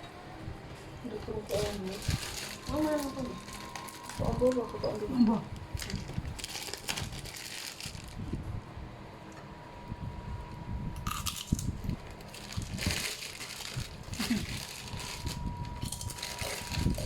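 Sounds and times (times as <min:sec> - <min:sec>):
person chewing crunchy food: 0:11.0 - 0:11.7.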